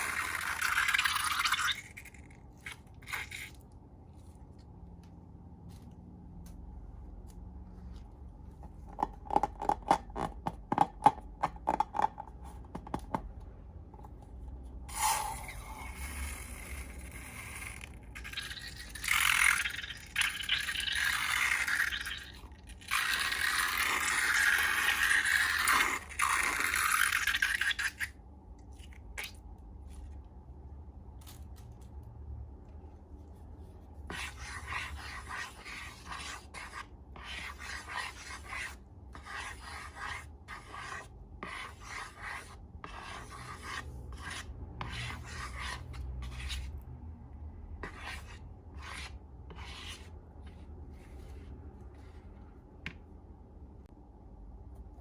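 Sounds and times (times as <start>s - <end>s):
scraping and rubbing: 33.2s - 46.8s, 47.8s - 52.5s.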